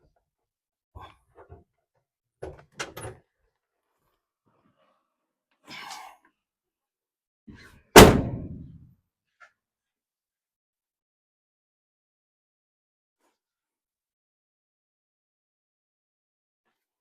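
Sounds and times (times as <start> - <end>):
truck door slamming: 8.0 - 8.7.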